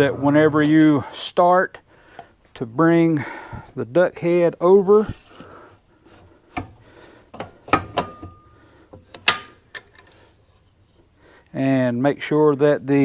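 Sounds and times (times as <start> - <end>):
tire changer metal clanks: 6.5 - 10.0.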